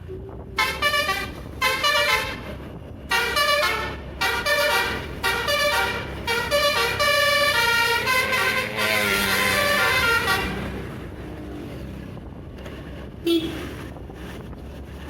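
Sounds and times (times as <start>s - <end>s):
bus engine and road rumble: 0.0s - 15.0s
musical bus horn playing tune: 0.6s - 11.0s.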